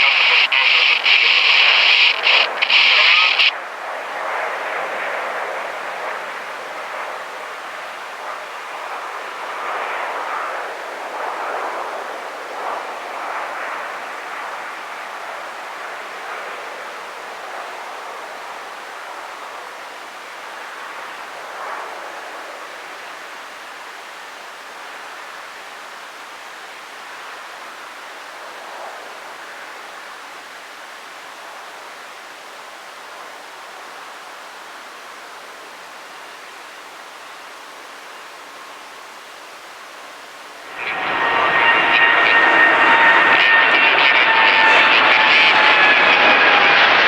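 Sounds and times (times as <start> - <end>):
faint outdoor hiss: 0.0 - 3.6, 22.3 - 40.9
jet engines at takeoff thrust: 0.0 - 23.4, 40.6 - 47.0.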